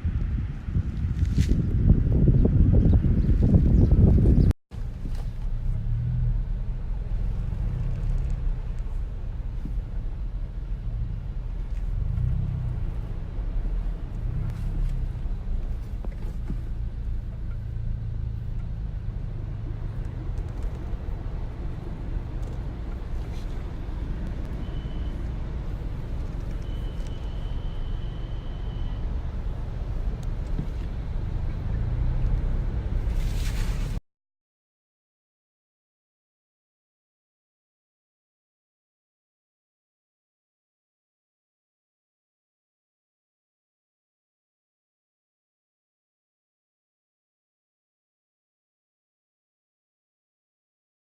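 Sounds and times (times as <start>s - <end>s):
car engine rumbling: 0.0s - 34.0s.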